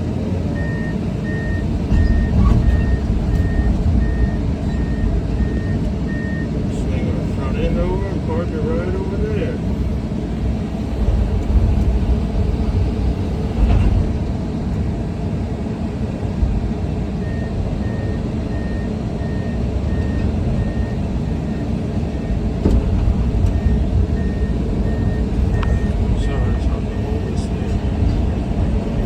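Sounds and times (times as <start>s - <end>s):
excavator diesel engine rumbling: 0.0s - 29.0s
warning alarm beeping: 0.5s - 8.3s, 23.4s - 27.3s.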